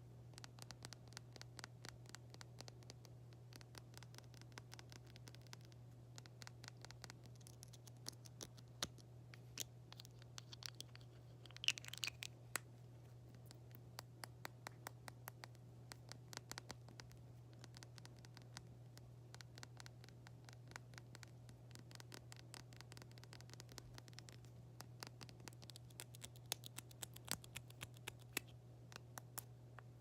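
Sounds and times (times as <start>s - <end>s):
low electrical hum: 0.0s - 30.0s
tapping and clicking on small objects: 0.4s - 12.7s.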